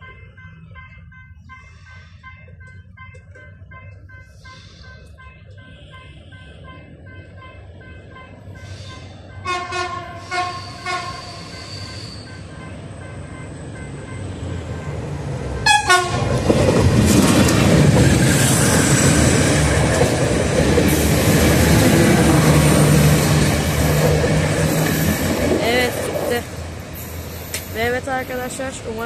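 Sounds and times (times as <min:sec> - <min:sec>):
train rumble and wheel clatter: 0:00.0 - 0:29.0
train horn: 0:08.8 - 0:12.7, 0:15.6 - 0:16.3.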